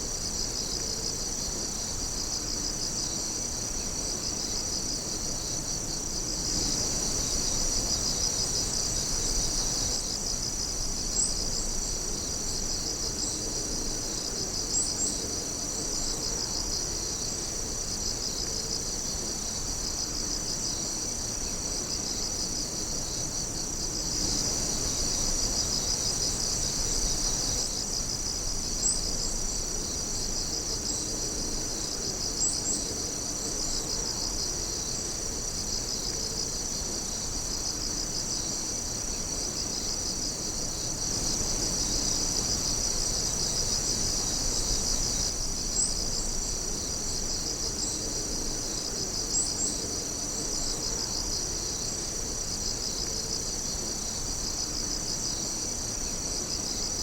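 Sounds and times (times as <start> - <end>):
insects trilling: 0.0 - 57.0
sharp insect chirps: 23.0 - 29.5, 39.8 - 48.1.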